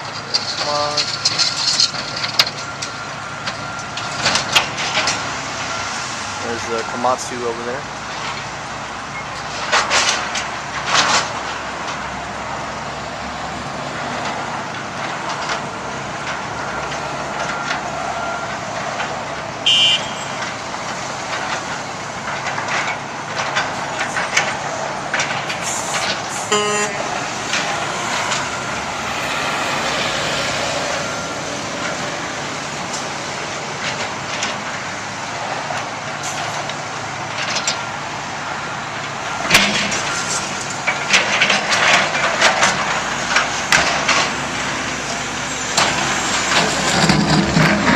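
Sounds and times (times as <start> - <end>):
heavy machinery diesel engines: 0.0 - 47.9.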